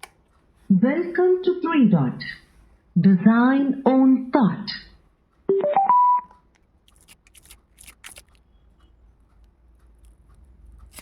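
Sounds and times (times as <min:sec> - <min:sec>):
handling clicks and rustles: 0:06.5 - 0:08.5.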